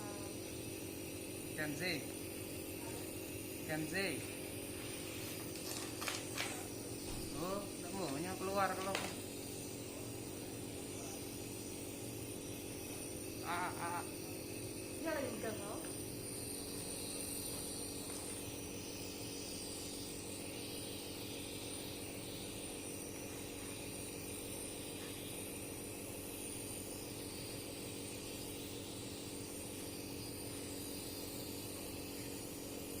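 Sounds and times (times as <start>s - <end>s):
machine hum: 0.0s - 25.5s
hiss: 0.0s - 33.0s.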